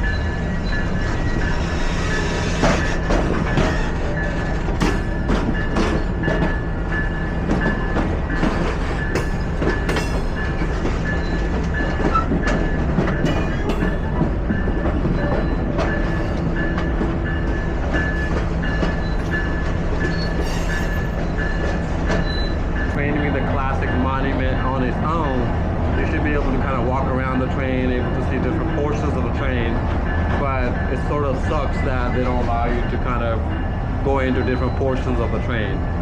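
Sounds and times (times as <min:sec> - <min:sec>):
train rumble and hum: 0:00.0 - 0:36.0
wheels clicking over rail joints: 0:00.1 - 0:22.5.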